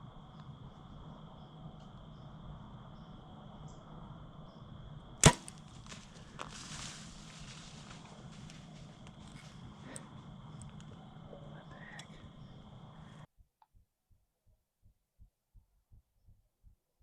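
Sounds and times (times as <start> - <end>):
bow string snap: 5.2 - 6.0
short rustling hiss: 5.2 - 8.9.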